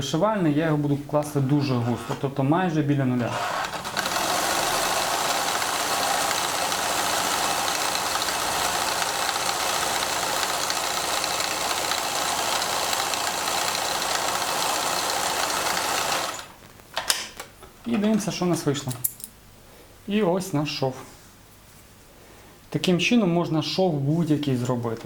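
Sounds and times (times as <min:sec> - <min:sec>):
sewing machine running: 0:03.2 - 0:16.6.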